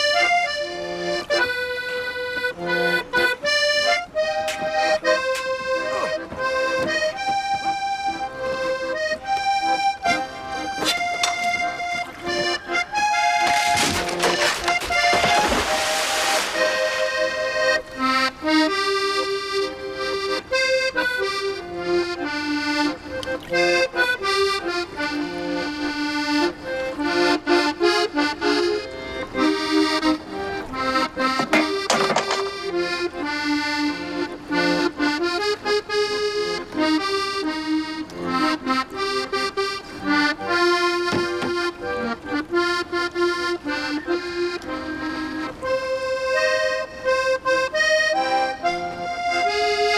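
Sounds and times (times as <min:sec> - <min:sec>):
accordion playing dance tune: 0:00.0 - 0:49.9.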